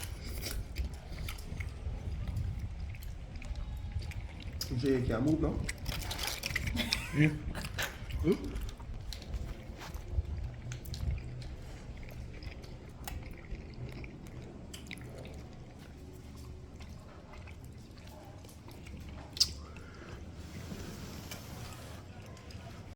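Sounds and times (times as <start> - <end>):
low steady hum: 0.0 - 22.9
person chewing food: 0.0 - 22.9
wet mouth clicks: 6.6 - 15.6, 18.6 - 20.2.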